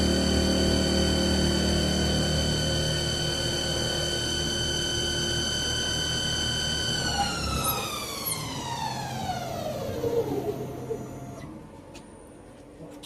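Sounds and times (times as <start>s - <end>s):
spindle motor whining: 0.0s - 11.7s.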